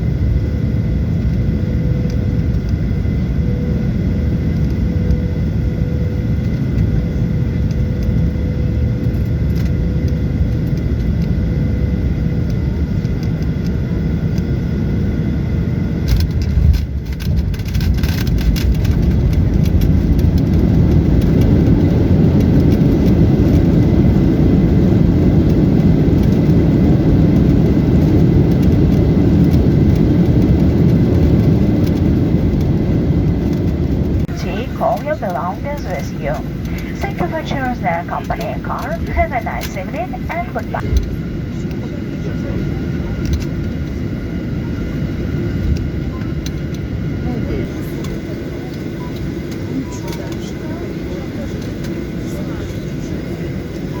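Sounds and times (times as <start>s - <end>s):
faint steady whine: 18.1s - 54.0s.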